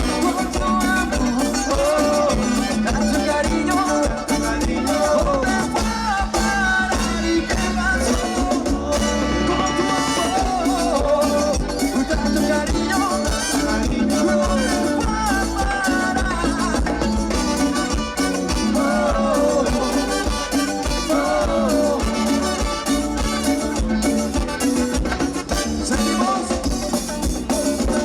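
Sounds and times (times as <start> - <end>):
live latin dance band: 0.0 - 28.0
percussion beat: 0.0 - 28.0.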